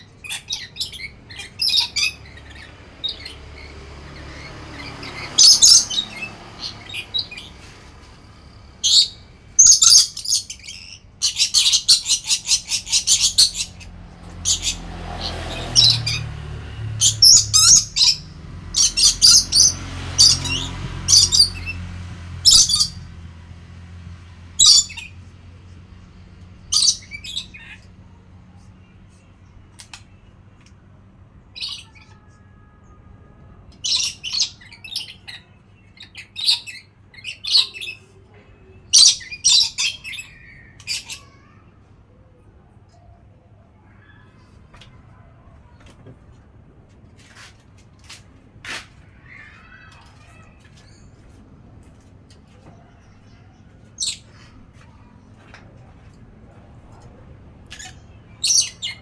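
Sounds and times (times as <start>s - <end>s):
parrot squawking and chirping: 0.0s - 23.2s, 24.6s - 25.2s, 26.6s - 27.9s, 31.5s - 32.6s, 33.7s - 38.2s, 38.8s - 41.7s, 49.1s - 51.3s, 52.8s - 55.2s, 57.6s - 59.0s.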